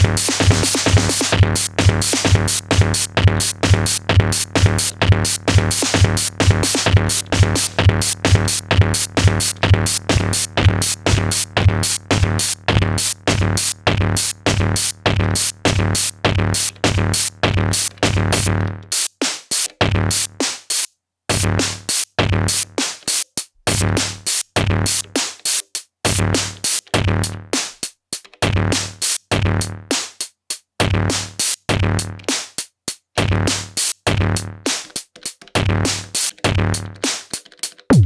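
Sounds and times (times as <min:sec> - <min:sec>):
hi-hat ticks: 0:00.0 - 0:18.1, 0:18.9 - 0:29.3, 0:29.9 - 0:38.0
synthesized kick drums: 0:00.0 - 0:18.8, 0:19.8 - 0:20.4, 0:21.3 - 0:22.7, 0:23.7 - 0:25.1, 0:28.4 - 0:29.8, 0:30.8 - 0:32.3.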